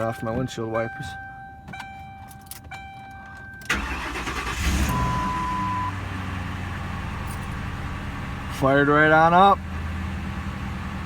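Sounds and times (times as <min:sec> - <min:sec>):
car engine starting and idling: 0:01.6 - 0:11.0
starter motor cranking: 0:03.7 - 0:05.0.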